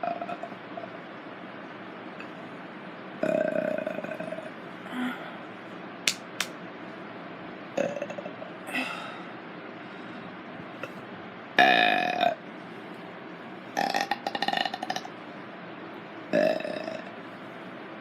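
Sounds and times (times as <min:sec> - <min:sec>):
person burping: 0:07.8 - 0:08.9, 0:13.8 - 0:15.1, 0:16.4 - 0:17.1.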